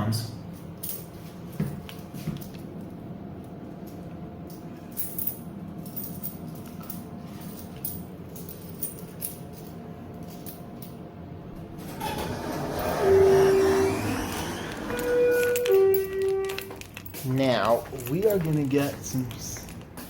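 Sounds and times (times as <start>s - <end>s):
elevator low hum: 0.0s - 20.0s
louder fuller elevator sound: 11.7s - 15.6s.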